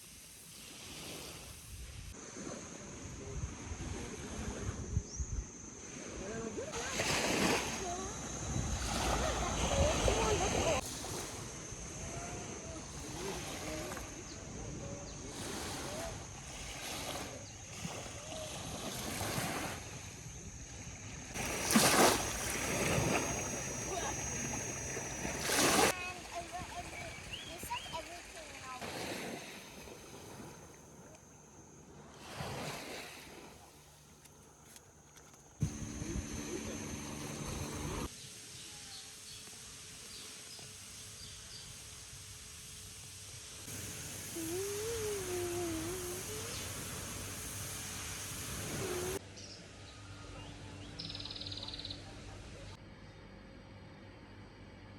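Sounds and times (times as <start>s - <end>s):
outdoor ambience: 0.0s - 54.9s
wind: 0.0s - 54.9s
sea water washing: 5.8s - 34.0s, 35.6s - 38.1s, 39.1s - 49.2s
water splash: 21.3s - 30.7s
faint high bird chirps: 26.7s - 28.7s, 48.8s - 52.2s.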